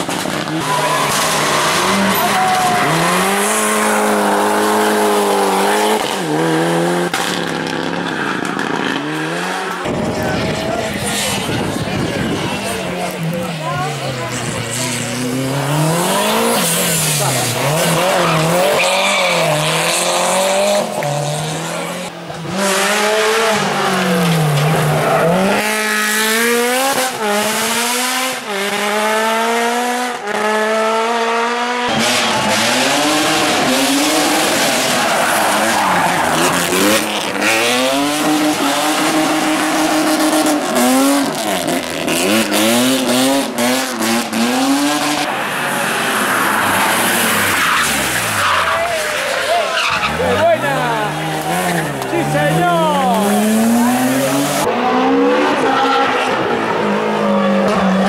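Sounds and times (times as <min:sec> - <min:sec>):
rally car engine revving: 0:00.0 - 0:58.0.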